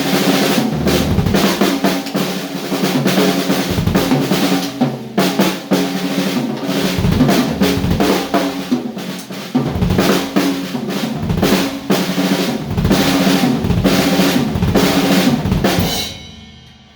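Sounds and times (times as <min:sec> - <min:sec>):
snare and bass drum hits: 0:00.5 - 0:02.2, 0:03.6 - 0:04.9, 0:06.7 - 0:15.8.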